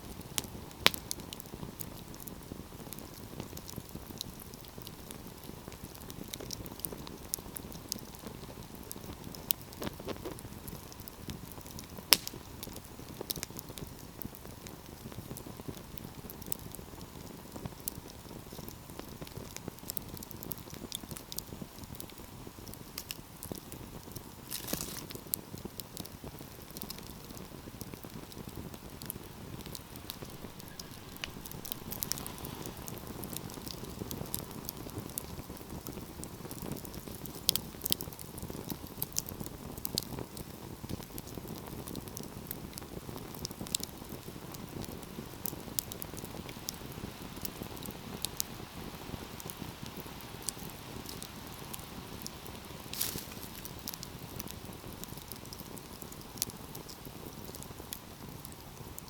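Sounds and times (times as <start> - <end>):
fire crackling and popping: 0.0 - 59.0
wood fire burning: 0.0 - 59.0.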